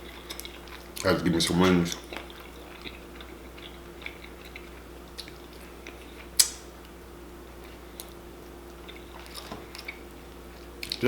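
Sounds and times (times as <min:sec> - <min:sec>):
chewing and biting food: 0:00.0 - 0:06.7, 0:07.6 - 0:11.0
wet mouth smacks: 0:06.4 - 0:06.7.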